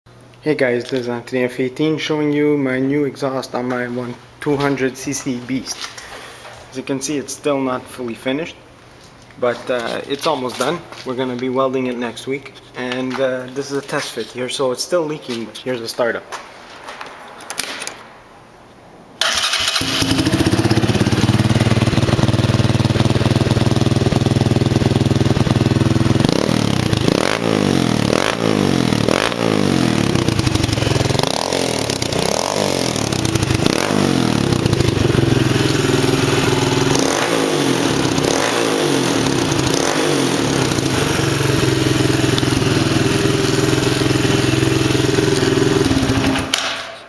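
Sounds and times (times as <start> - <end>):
atv engine idling and revving: 19.8 - 46.5.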